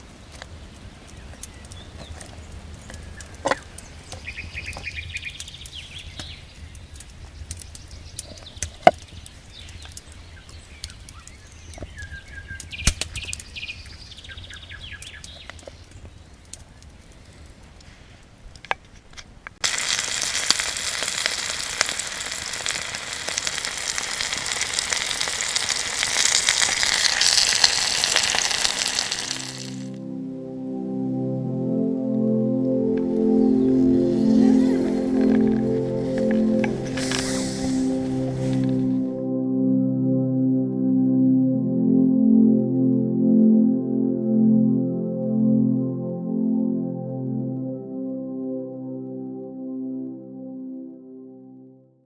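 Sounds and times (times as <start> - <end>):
campfire crackling and popping: 0.0 - 13.9, 19.6 - 30.0
bird calls: 0.2 - 16.9
food sizzling over fire: 19.6 - 29.9, 36.7 - 38.9.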